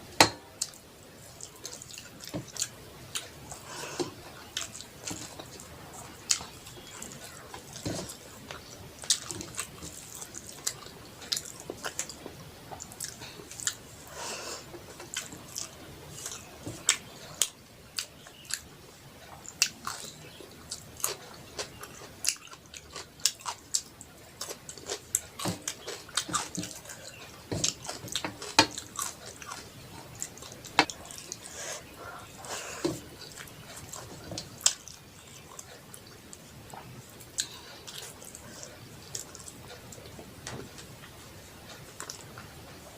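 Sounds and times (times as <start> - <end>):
chewing and biting food: 0.6 - 13.9, 14.8 - 31.5.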